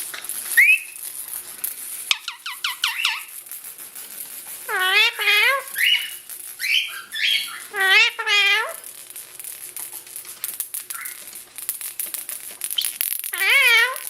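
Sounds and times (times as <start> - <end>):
parakeet calling shrilly: 0.6 - 1.0, 2.1 - 3.4, 4.6 - 8.8, 10.9 - 11.3, 12.8 - 14.0
parakeet squawks: 2.1 - 3.3, 4.6 - 8.8, 10.9 - 11.2, 12.8 - 14.0
light clicking and rattling: 8.6 - 14.0.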